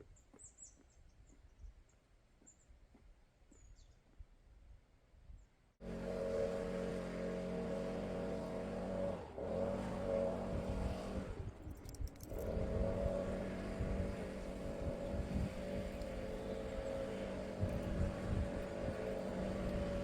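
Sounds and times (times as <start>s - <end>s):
leaf blower engine running: 5.8s - 20.0s.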